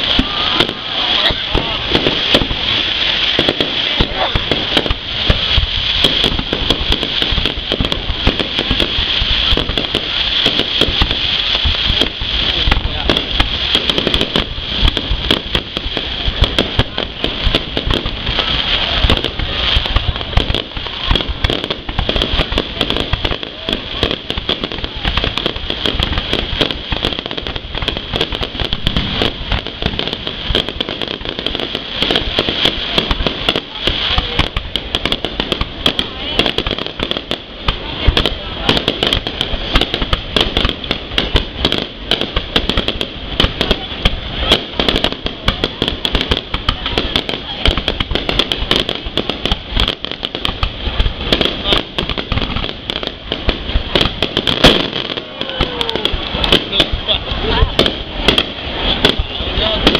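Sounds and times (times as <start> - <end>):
fireworks bangs: 0.0 - 59.9
steady hiss: 0.0 - 59.9.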